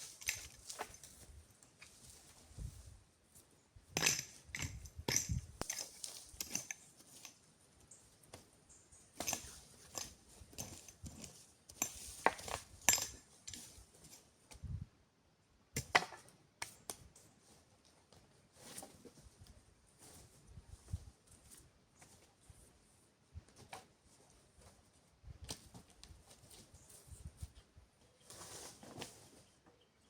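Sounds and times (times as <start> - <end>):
camping gear clinking: 0.0 - 2.4, 3.9 - 14.4.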